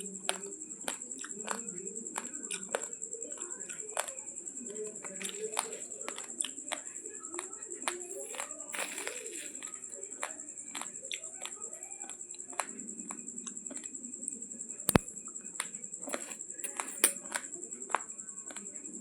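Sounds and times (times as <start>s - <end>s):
rice crunching while chewed: 0.0s - 4.2s, 5.0s - 14.0s.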